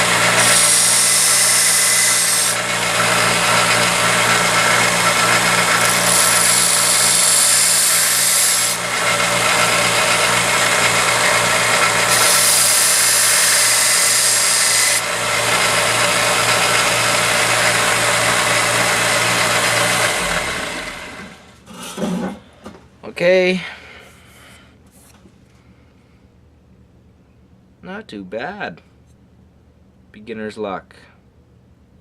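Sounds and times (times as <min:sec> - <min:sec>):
belt grinder motor hum: 0:00.0 - 0:21.4
motor winding down: 0:00.0 - 0:21.4
blade grinding hiss: 0:04.6 - 0:08.9, 0:12.0 - 0:15.1.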